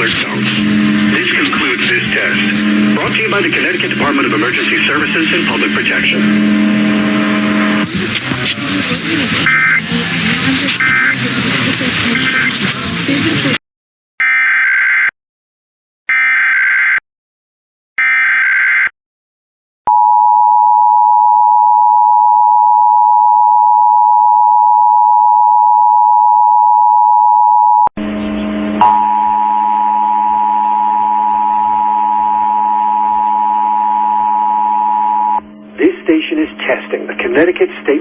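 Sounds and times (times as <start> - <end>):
low hum: 0.0 - 10.6, 28.0 - 37.8
noisy steady alert tone: 0.0 - 12.6, 28.0 - 38.0
screeching digital data warble: 9.4 - 9.8
steady two-tone alert beep: 9.5 - 9.8.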